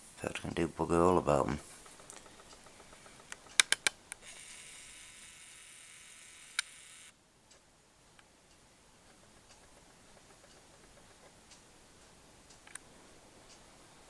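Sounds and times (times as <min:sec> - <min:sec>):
camera high whir: 0:01.9 - 0:07.2
camera clicks: 0:02.0 - 0:07.1.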